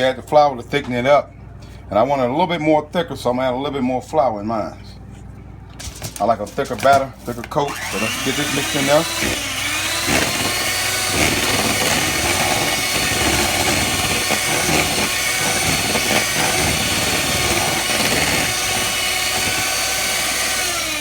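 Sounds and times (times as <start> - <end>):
electric mixer running: 7.6 - 21.0.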